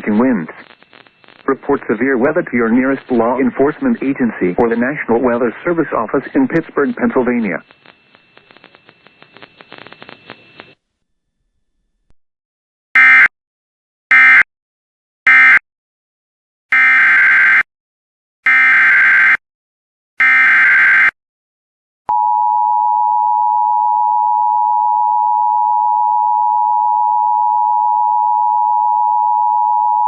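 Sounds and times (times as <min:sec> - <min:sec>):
data burst tones: 0:00.0 - 0:10.8.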